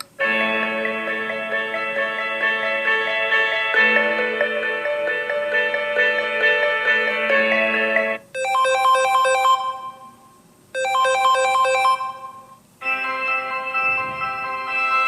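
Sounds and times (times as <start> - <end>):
phone ringtone: 8.4 - 10.2, 10.8 - 15.0.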